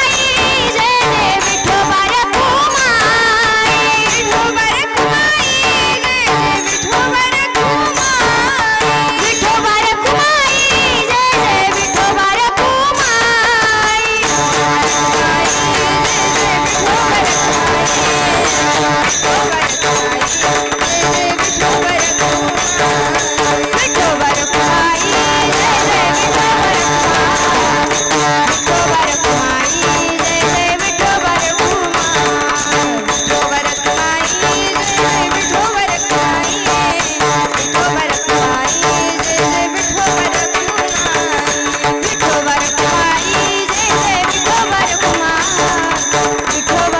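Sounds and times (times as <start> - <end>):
hand cymbals: 0.0 - 46.9
sustained held tones: 13.9 - 36.9
drum beat: 14.2 - 33.4.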